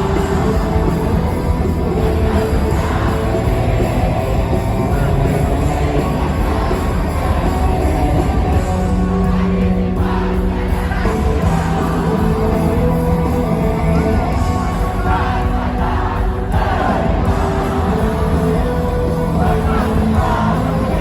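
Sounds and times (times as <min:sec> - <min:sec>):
crowd shouting and singing along: 0:00.0 - 0:21.0
live rock band playing: 0:00.0 - 0:21.0.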